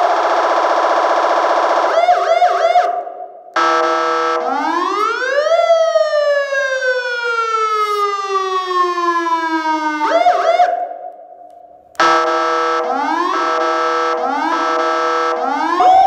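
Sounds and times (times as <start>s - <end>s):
motorcycle siren wailing: 4.4s - 11.0s, 12.0s - 16.0s.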